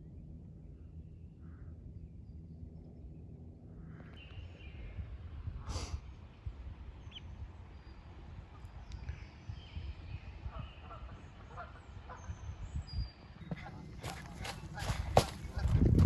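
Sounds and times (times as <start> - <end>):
wind on microphone: 4.4 - 16.0.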